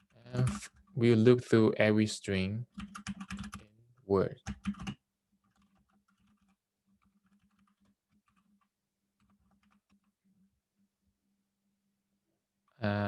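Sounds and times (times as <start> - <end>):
typing on computer keyboard: 2.7 - 3.7, 4.4 - 10.2.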